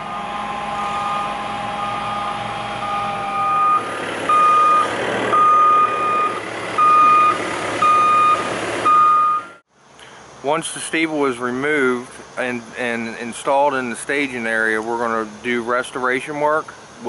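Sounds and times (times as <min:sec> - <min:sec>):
low engine running: 0:00.0 - 0:09.6
reversing alarm beeping: 0:00.0 - 0:09.6.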